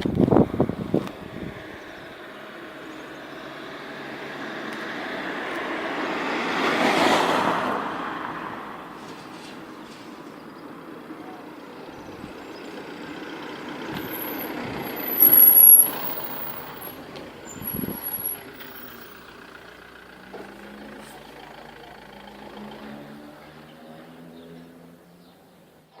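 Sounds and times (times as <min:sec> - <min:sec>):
low engine hum: 0:00.0 - 0:06.2
vehicle passing: 0:00.0 - 0:25.9
traffic rumble: 0:00.0 - 0:26.0
high squeals: 0:14.0 - 0:19.3.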